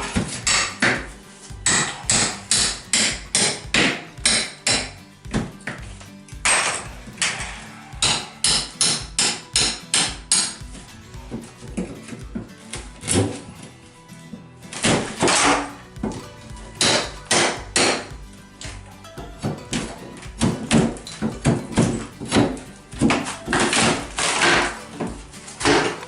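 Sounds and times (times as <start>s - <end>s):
hammer striking wall: 0.0s - 5.5s, 8.0s - 10.8s, 14.8s - 18.1s.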